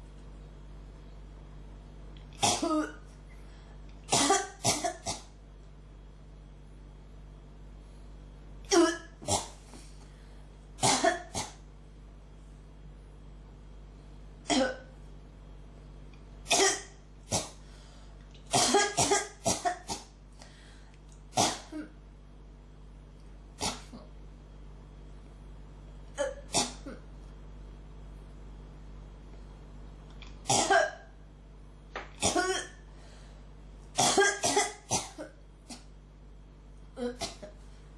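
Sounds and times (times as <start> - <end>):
person coughing: 2.4 - 3.0, 4.1 - 5.4, 8.7 - 9.6, 10.8 - 11.6, 14.4 - 14.9, 16.5 - 17.6, 18.5 - 20.2, 21.3 - 22.0, 23.6 - 24.1, 26.2 - 27.1, 30.4 - 31.1, 32.2 - 32.8, 34.0 - 35.9, 37.0 - 37.6.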